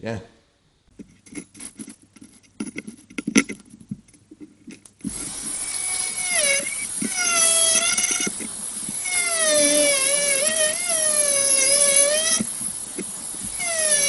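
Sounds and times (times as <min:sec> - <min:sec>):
gliding held pitched tones: 0:05.6 - 0:12.4.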